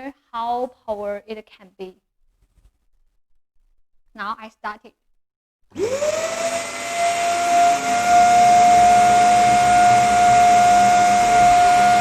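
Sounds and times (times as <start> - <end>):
vacuum cleaner motor whining: 5.7 - 12.0.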